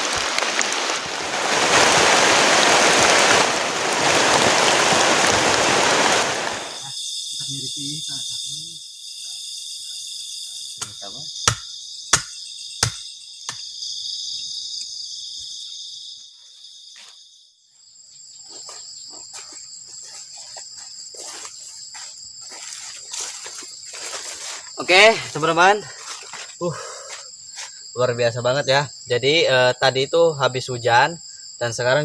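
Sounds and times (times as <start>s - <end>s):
insects chirring: 0.0s - 32.0s
sharp knocks: 10.8s - 13.6s.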